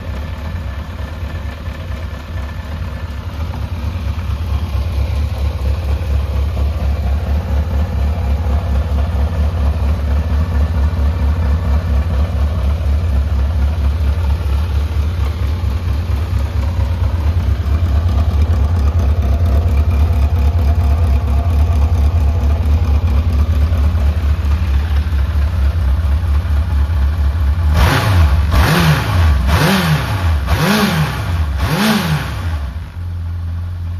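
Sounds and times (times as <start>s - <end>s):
motorcycle engine idling: 0.0s - 33.9s
engine revving: 27.4s - 33.0s.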